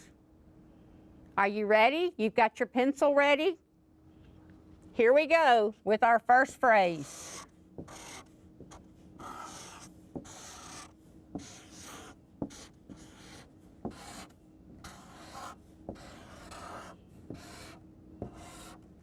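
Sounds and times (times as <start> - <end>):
scratchy writing strokes on board: 7.0 - 18.8
writing tool tapping board: 7.8 - 8.8, 9.4 - 10.8, 11.4 - 13.1, 13.8 - 18.7.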